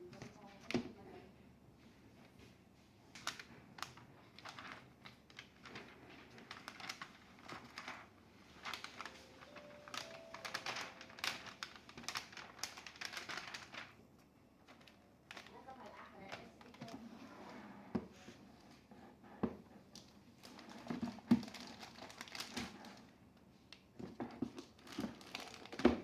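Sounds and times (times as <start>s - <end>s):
laptop keyboard typing: 8.7s - 13.7s.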